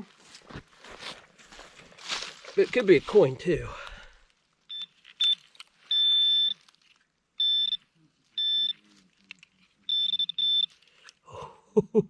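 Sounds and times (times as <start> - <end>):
metal detector beeping: 4.7 - 6.8, 7.4 - 9.1, 9.8 - 11.2.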